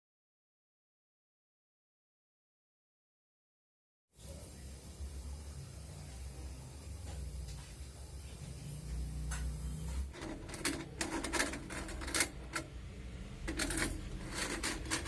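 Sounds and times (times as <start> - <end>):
kitchen utensils clattering: 10.1 - 12.8, 13.4 - 15.0.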